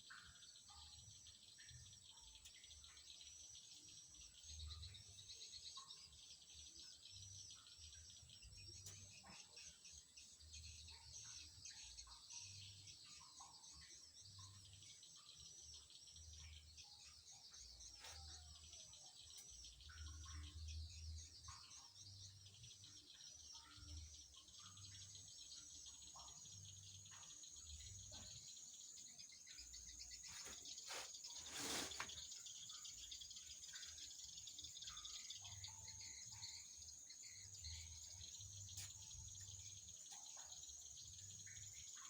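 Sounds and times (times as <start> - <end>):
insects and birds chirping: 0.0 - 42.0
high-pitched insect whine: 23.1 - 42.0.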